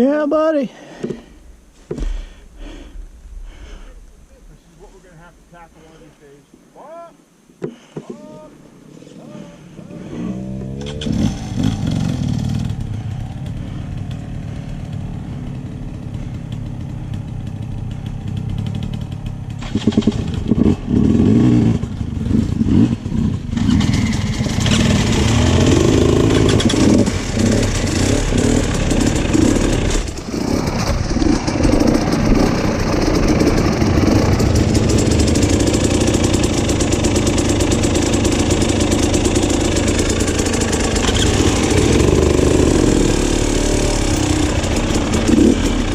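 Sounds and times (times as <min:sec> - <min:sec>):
off-road vehicle engine revving: 0:09.9 - 0:16.2, 0:19.5 - 0:45.9.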